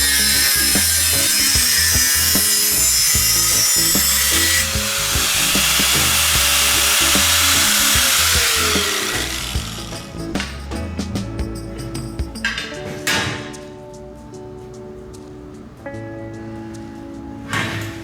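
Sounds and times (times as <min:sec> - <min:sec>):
power tool working wood: 0:00.0 - 0:10.2
background music with steady beat: 0:00.0 - 0:18.0.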